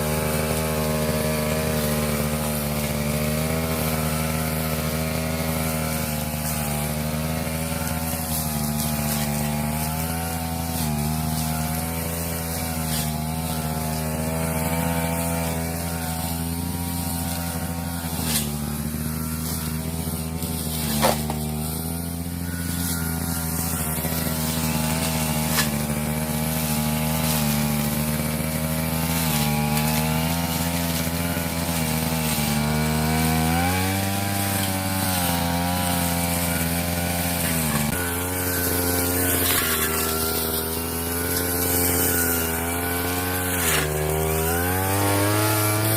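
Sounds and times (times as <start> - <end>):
brush cutter cutting grass: 0.0 - 45.9.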